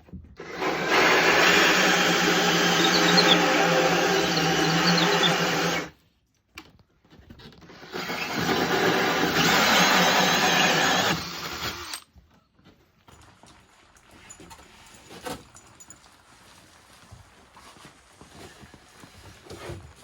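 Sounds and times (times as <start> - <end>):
power tool cutting: 0.4 - 5.9, 7.8 - 12.0.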